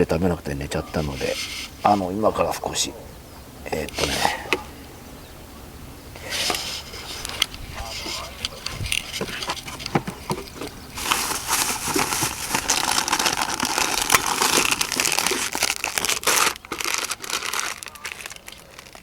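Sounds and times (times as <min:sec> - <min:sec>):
plastic packaging crinkling: 0:08.0 - 0:19.0.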